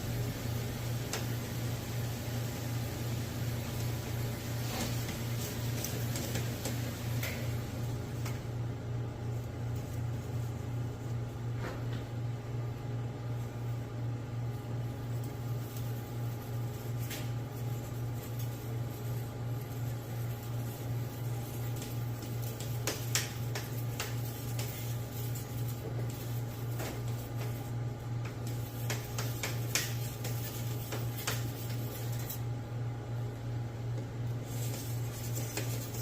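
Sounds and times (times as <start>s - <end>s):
steady low hum: 0.0s - 36.0s.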